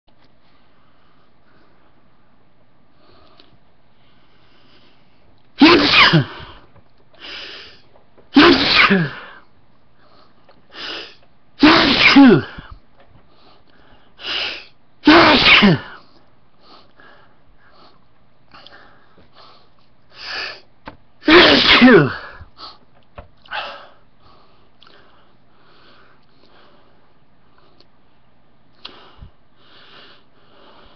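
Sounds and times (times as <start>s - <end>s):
person sneezing: 5.6s - 9.4s, 10.7s - 12.8s, 14.2s - 16.1s, 21.2s - 22.4s.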